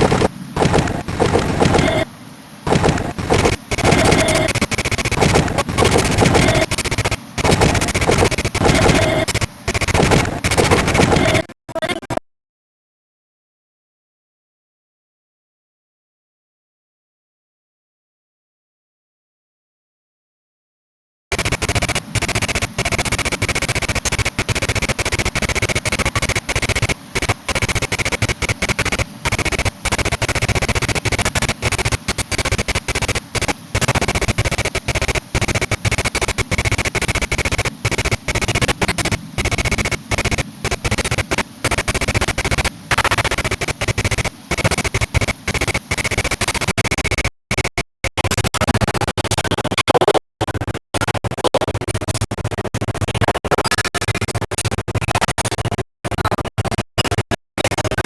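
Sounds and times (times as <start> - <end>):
turntable scratching: 0.0 - 2.1, 2.7 - 12.2, 21.3 - 51.7.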